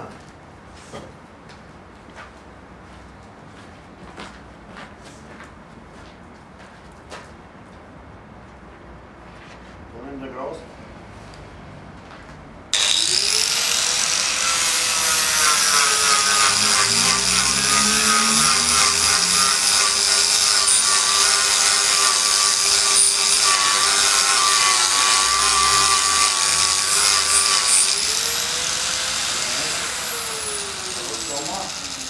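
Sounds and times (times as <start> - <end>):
electric grinder whining: 12.8 - 32.0.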